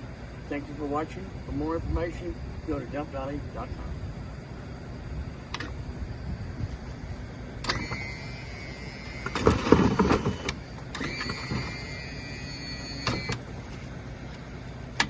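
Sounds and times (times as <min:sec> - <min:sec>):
electric motor whining: 0:07.6 - 0:13.5.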